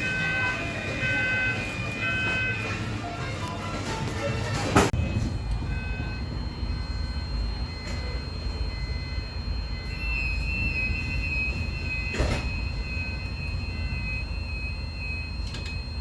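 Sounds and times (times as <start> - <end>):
fire alarm high-pitched tone: 0.0 - 3.6, 5.0 - 16.0
low rumbling background: 4.9 - 16.0.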